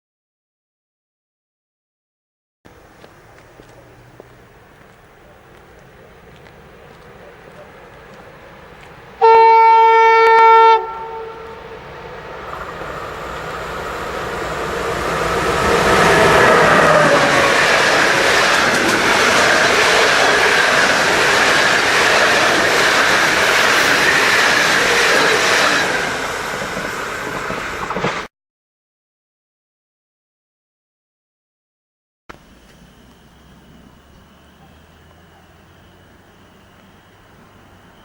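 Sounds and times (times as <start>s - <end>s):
train wheel and rail noise: 2.7s - 28.3s, 32.3s - 38.0s
train horn blast: 9.2s - 11.9s.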